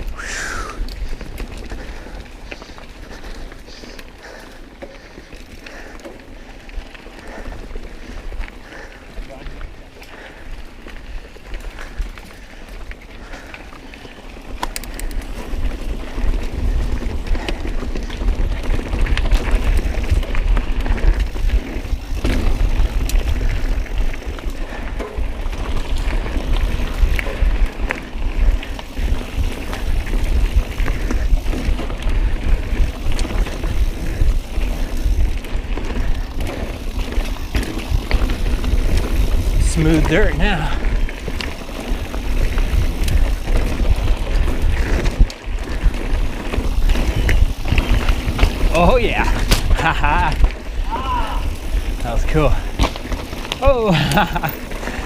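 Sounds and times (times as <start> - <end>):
bike rattling: 0.0 - 55.0
bike tyres clattering over rocks: 0.0 - 55.0
wind buffeting microphone: 14.8 - 55.0.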